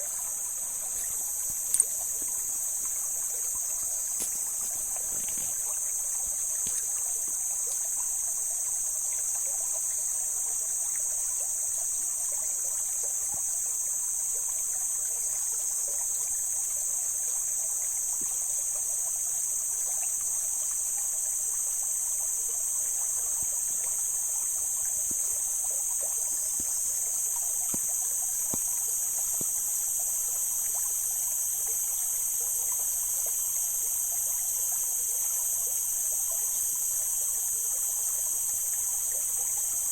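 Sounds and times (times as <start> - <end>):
stream flowing over rocks: 0.0 - 9.8.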